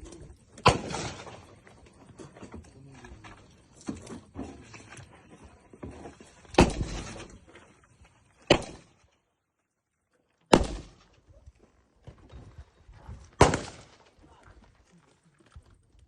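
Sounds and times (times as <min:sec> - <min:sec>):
airsoft rifle shots: 0:00.6 - 0:01.4, 0:06.6 - 0:07.1, 0:08.5 - 0:08.9, 0:10.5 - 0:11.1, 0:13.4 - 0:14.0.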